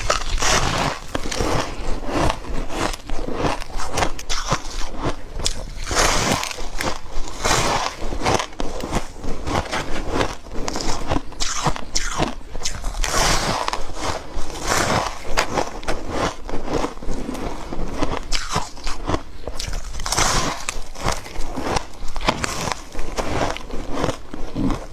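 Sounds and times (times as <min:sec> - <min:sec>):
crunching bites of ice: 0:00.0 - 0:24.9.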